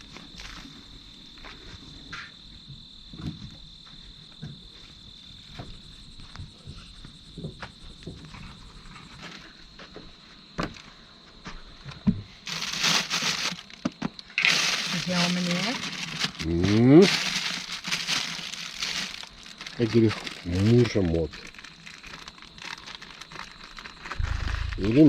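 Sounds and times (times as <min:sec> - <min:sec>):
rustling noise: 0:12.4 - 0:13.8, 0:14.4 - 0:25.0
insect trilling: 0:12.5 - 0:25.0.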